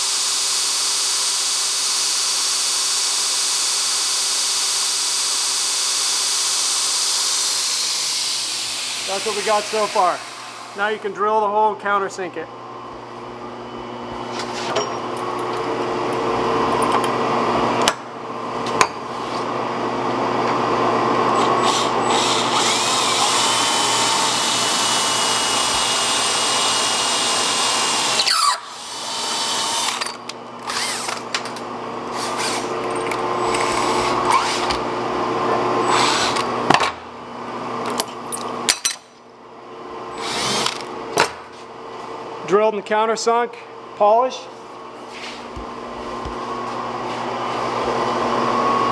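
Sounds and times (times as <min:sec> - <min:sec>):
power drill boring metal: 0:00.0 - 0:11.1, 0:21.2 - 0:34.9, 0:35.8 - 0:36.6, 0:40.1 - 0:40.9.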